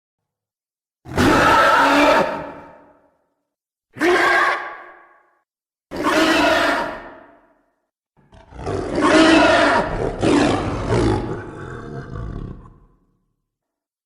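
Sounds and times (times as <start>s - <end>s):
creature roar: 1.1s - 2.7s, 4.0s - 4.8s, 5.9s - 7.3s, 8.3s - 13.0s.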